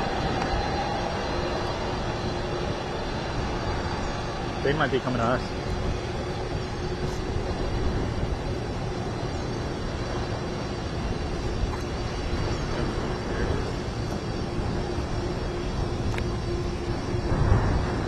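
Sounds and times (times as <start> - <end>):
aircraft engines rumbling: 0.0 - 18.0
steady hum: 0.0 - 18.0.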